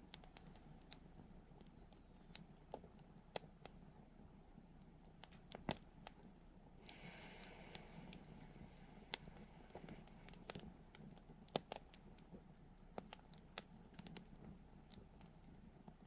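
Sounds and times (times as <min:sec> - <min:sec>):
campfire crackling: 0:00.0 - 0:16.0
burning hiss: 0:06.7 - 0:15.5.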